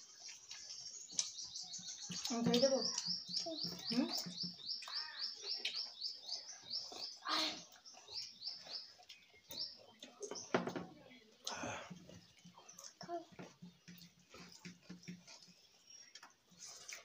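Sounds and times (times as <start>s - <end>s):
small bird chirping: 0.0s - 17.0s.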